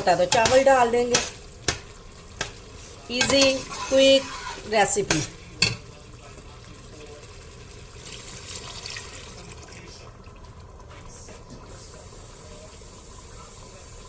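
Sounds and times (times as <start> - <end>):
water pouring: 5.9 - 11.1.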